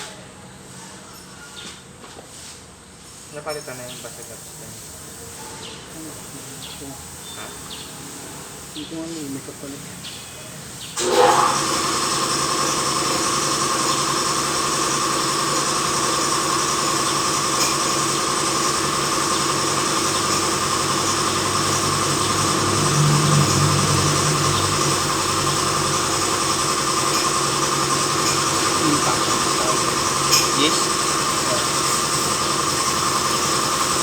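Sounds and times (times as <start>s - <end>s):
motor running with high whine: 11.0s - 34.0s.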